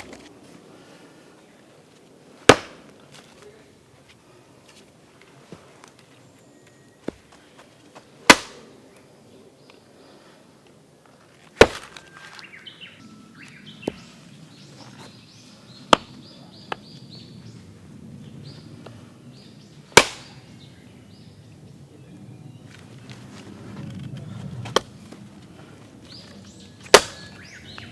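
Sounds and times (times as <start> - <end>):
hatchet chopping firewood: 2.4 - 3.4, 8.2 - 8.8, 11.5 - 12.5, 13.8 - 14.1, 15.9 - 16.2, 19.9 - 20.5, 26.1 - 27.9.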